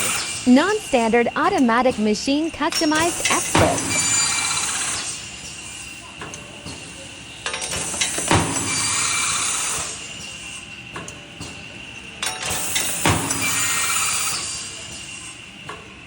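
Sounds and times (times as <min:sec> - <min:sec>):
machining noise: 0:00.0 - 0:06.2
steady high machine whine: 0:00.0 - 0:16.0.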